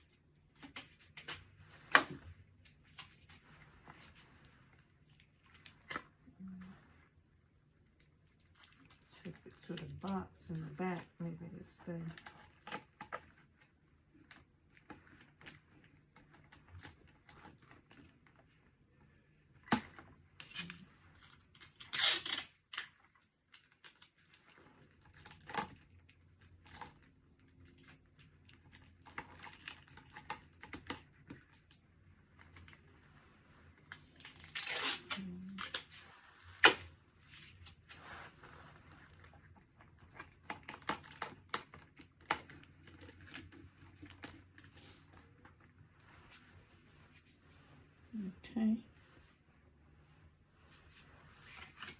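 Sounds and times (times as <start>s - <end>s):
tearing and crinkling: 0.0s - 7.1s, 19.6s - 31.8s, 32.4s - 47.5s, 50.7s - 51.9s.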